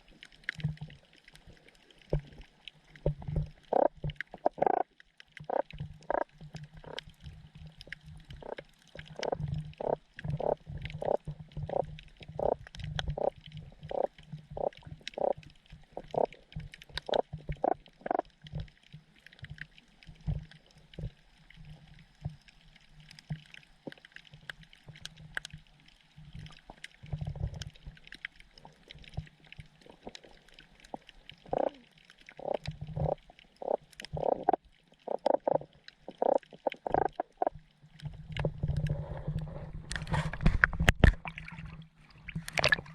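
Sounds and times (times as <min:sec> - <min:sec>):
fish making low pops: 0:08.3 - 0:18.7, 0:30.9 - 0:37.6.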